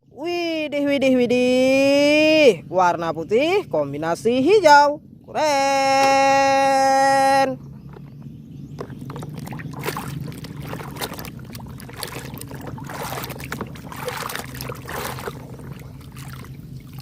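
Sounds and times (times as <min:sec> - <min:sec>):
steady low hum: 0:00.0 - 0:17.0
water splashing and sloshing: 0:07.6 - 0:17.0.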